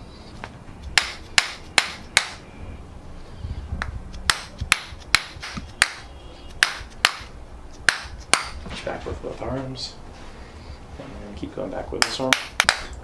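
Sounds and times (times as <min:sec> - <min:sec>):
sharp knocks: 0:00.8 - 0:02.4, 0:03.8 - 0:09.0, 0:12.0 - 0:13.0.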